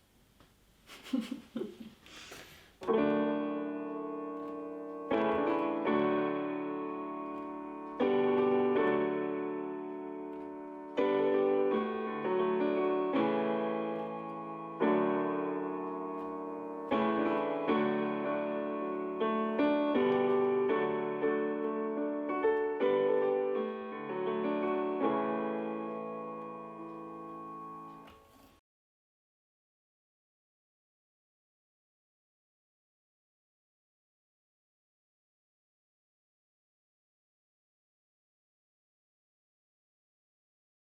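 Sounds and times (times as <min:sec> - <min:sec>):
piano music: 0:02.8 - 0:28.6.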